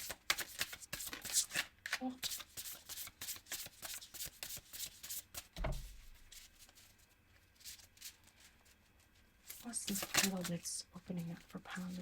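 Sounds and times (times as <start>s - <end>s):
cards being handled: 0.0s - 5.6s, 6.3s - 10.6s
cards being shuffled: 0.0s - 5.6s, 7.6s - 10.6s.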